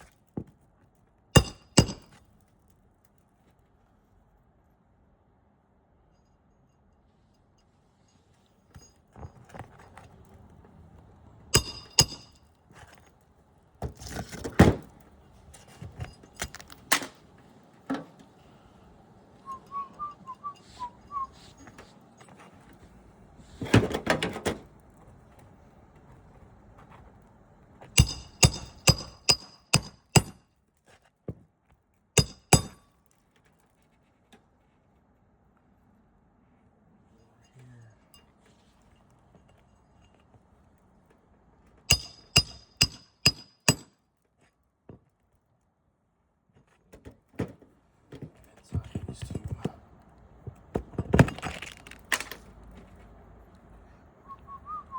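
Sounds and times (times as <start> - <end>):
hammer blows on metal: 11.6 - 12.4, 41.9 - 43.9.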